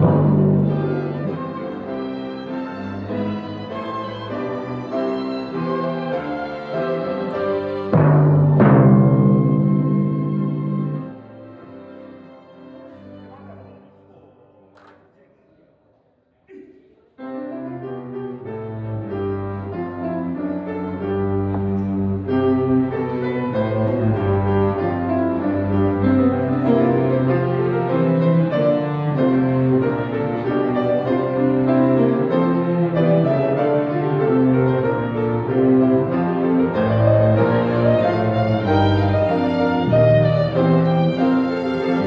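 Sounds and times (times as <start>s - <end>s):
bowed strings with piano: 0.0s - 14.0s, 17.4s - 42.0s.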